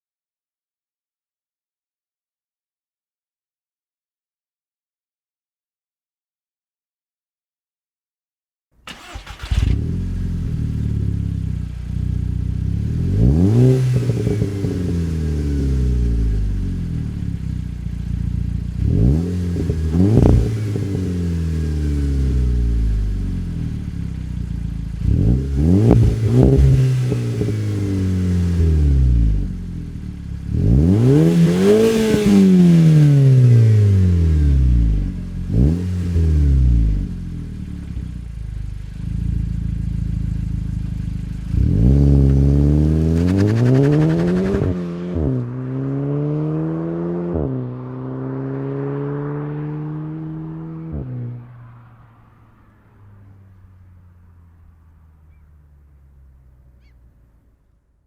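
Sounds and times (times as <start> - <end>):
car engine idling and revving: 8.9 - 58.0.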